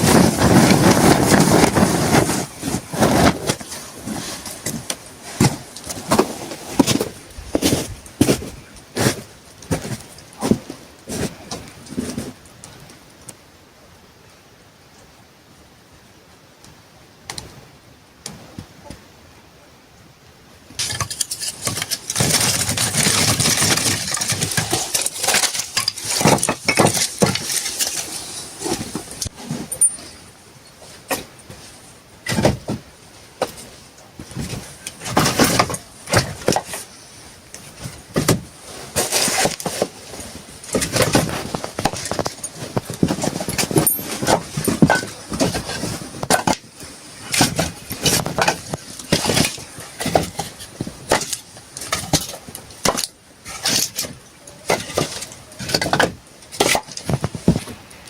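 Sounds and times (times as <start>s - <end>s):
rustling: 0.0s - 12.8s, 20.8s - 58.0s
hard objects knocking and clattering: 20.8s - 30.2s, 40.7s - 46.6s.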